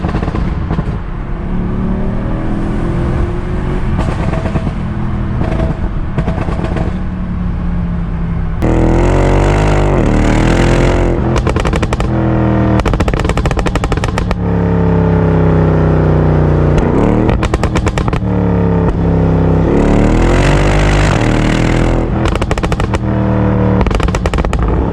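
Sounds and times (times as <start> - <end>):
car engine idling and revving: 0.0 - 24.9
exhaust crackles and pops: 10.0 - 14.4, 16.7 - 19.1, 20.8 - 23.1, 23.7 - 24.9.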